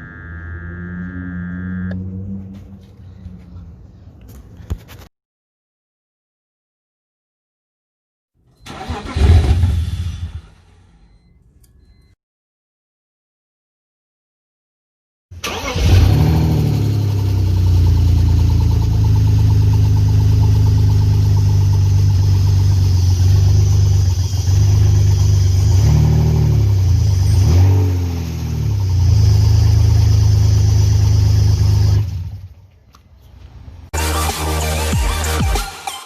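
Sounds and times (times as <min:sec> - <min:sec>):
car engine running and revving: 0:00.0 - 0:03.8, 0:15.8 - 0:32.5.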